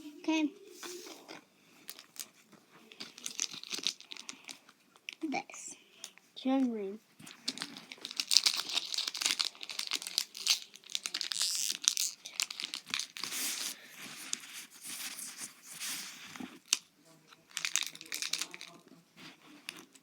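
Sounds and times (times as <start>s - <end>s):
foil wrapper tearing and crinkling: 3.1s - 4.5s, 7.4s - 16.8s, 17.5s - 18.8s.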